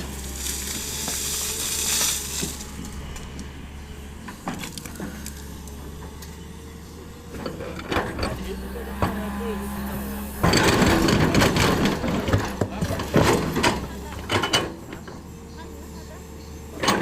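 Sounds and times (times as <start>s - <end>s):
mud and stones tipping: 0.0s - 6.5s
diesel engines running: 0.0s - 17.0s.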